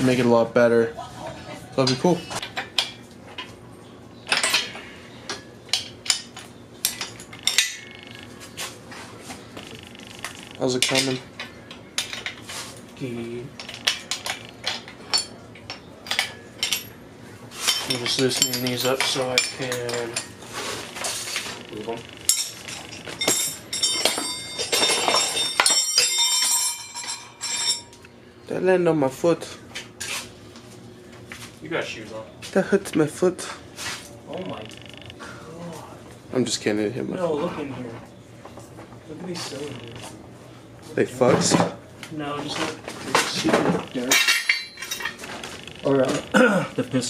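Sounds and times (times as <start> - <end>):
metal tools clinking and clanking: 4.3 - 8.4, 9.9 - 12.5, 13.2 - 17.0, 17.6 - 28.0, 42.4 - 46.5.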